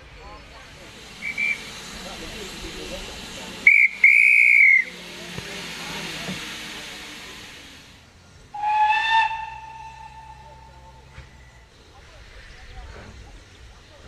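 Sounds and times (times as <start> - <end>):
steam hissing: 0.0 - 14.0
low steam whistle: 0.7 - 11.7
shrill steam whistle: 0.9 - 7.9, 8.5 - 11.7.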